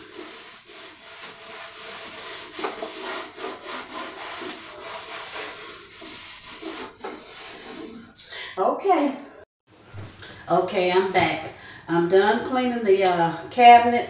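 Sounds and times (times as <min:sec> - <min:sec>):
scrubbing wooden surface: 0:00.0 - 0:08.1.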